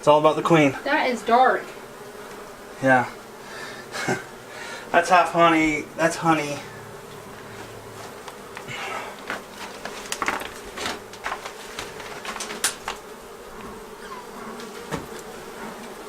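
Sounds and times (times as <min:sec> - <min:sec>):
bees buzzing: 0:00.0 - 0:16.0
smoker puffs and knocks: 0:07.6 - 0:13.8, 0:14.4 - 0:16.0.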